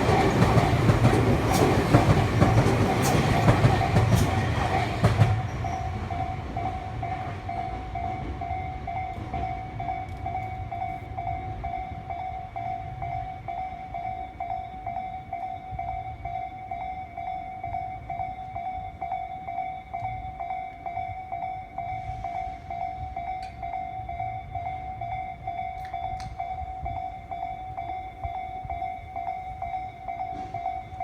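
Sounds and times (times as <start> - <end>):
train wheels clicking over rails: 0.0 - 11.1
crossing warning bell ringing: 0.0 - 31.0.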